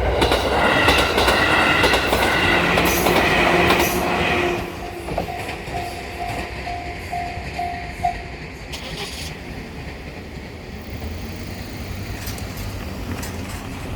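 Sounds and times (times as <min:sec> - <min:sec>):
low train rumble: 0:00.0 - 0:13.9
level-crossing warning bell: 0:00.9 - 0:08.7.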